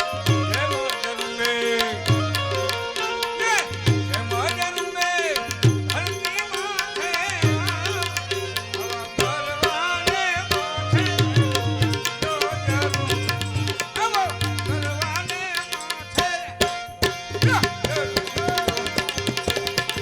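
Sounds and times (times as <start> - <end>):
tabla strokes: 0.0 - 20.0.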